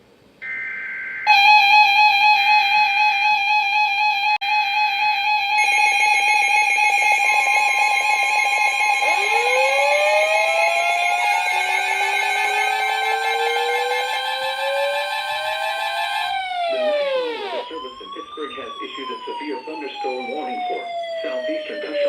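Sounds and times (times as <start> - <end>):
electronic alarm tone: 0.4 - 22.0
rising pitch sweeps: 5.6 - 22.0.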